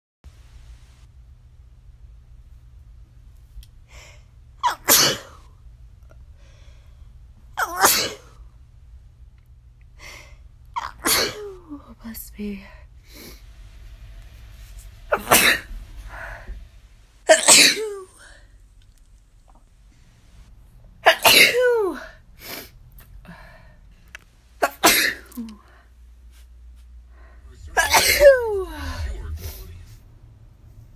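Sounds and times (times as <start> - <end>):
person sneezing: 4.6 - 5.4, 7.6 - 8.3, 10.8 - 11.6, 17.3 - 18.3, 21.0 - 22.7, 24.6 - 25.6, 27.8 - 29.0.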